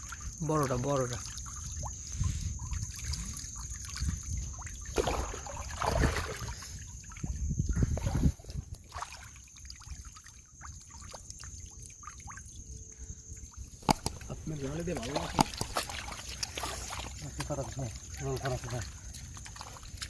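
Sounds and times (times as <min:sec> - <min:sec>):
river water trickling and splashing: 0:00.0 - 0:20.0
water drips and clicks: 0:13.5 - 0:20.0.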